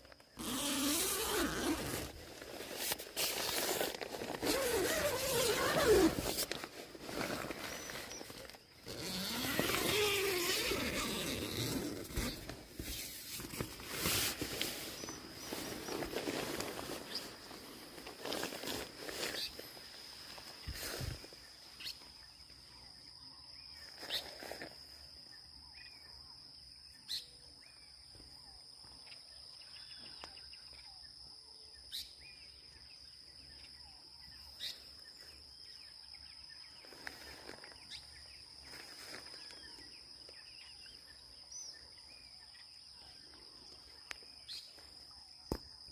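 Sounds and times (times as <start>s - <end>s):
high-pitched insect trill: 0.1s - 13.7s
faint bird chirps: 19.2s - 45.9s.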